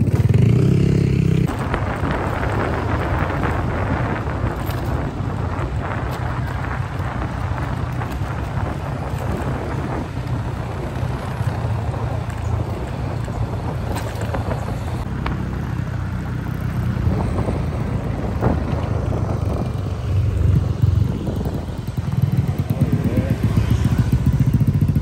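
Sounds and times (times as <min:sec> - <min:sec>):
motorcycle engine running: 0:00.0 - 0:25.0
wind rumbling on microphone: 0:00.0 - 0:25.0
light clicks or rattles: 0:04.5 - 0:09.5.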